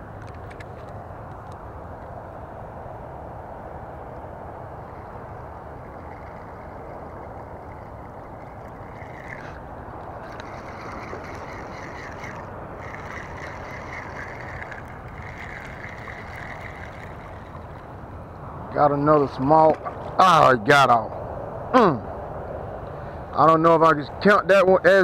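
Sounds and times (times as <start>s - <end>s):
spinning reel whirring: 4.8s - 9.6s, 10.2s - 18.0s.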